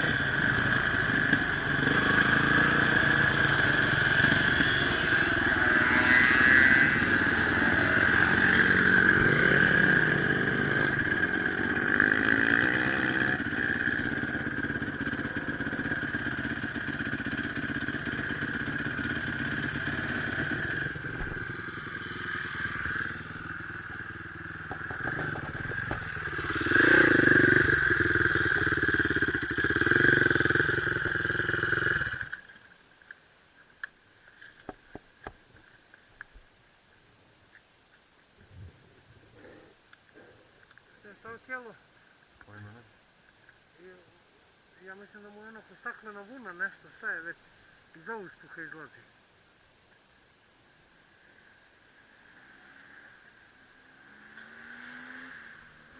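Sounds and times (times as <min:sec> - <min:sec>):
motorcycle engine revving: 0:00.0 - 0:32.6, 0:52.1 - 0:55.9.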